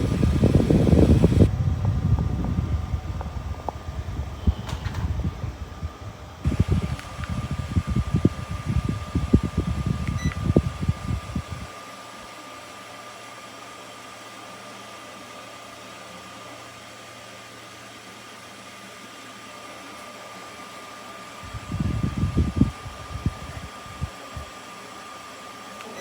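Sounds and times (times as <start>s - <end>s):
air buffeting microphone: 0.0s - 11.7s, 21.4s - 24.5s
fan running with airy hiss: 0.0s - 26.0s.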